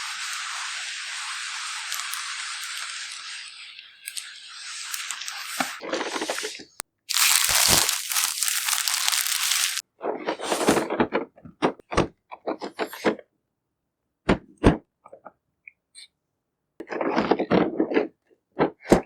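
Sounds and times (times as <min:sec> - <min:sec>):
packaging crinkling and cracking: 0:07.1 - 0:09.8
packaging tearing: 0:07.1 - 0:09.8.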